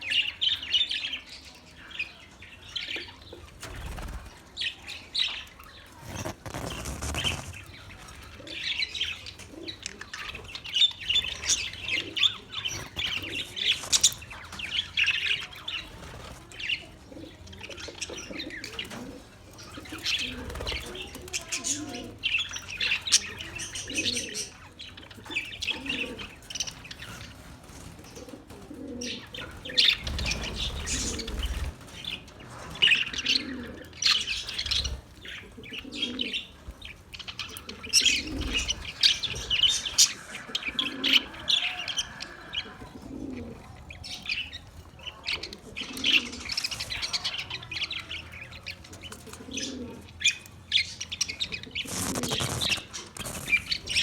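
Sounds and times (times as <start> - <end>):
budgerigars chattering: 8.4 - 15.9, 37.4 - 48.8.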